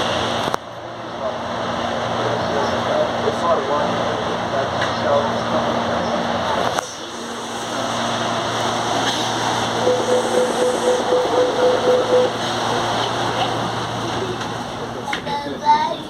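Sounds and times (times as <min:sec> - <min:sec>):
train running noise with low hum: 0:00.0 - 0:16.0
electric traction motors growling: 0:02.2 - 0:15.6
pulsing mid-pitched tone: 0:09.6 - 0:12.4.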